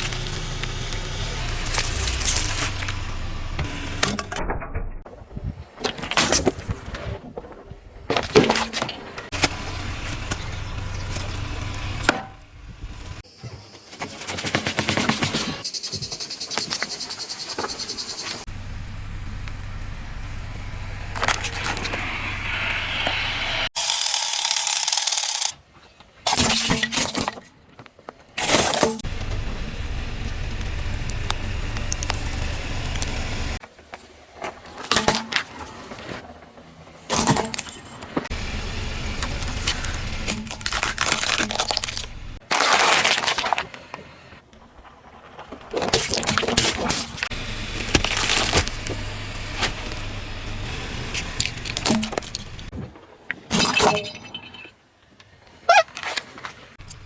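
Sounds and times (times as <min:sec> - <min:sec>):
tyres rolling: 0:00.0 - 0:04.4, 0:47.3 - 0:52.8
objects crunching under car tyres: 0:00.0 - 0:04.7, 0:05.8 - 0:13.3, 0:19.3 - 0:23.7, 0:27.8 - 0:53.9
tyres rolling with low rumble: 0:00.0 - 0:05.1, 0:09.2 - 0:13.4, 0:17.0 - 0:23.7, 0:29.0 - 0:33.6, 0:38.2 - 0:42.4, 0:47.2 - 0:53.3.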